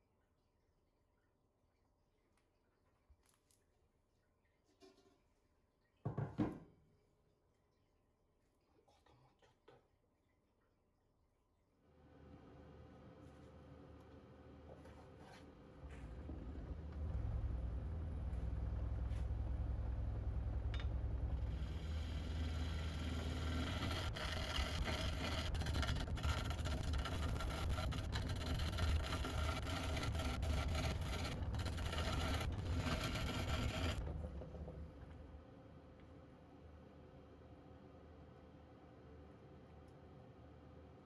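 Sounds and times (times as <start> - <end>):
wood lathe motor humming: 20.1 - 34.0
turning tool scraping wood: 22.1 - 34.0.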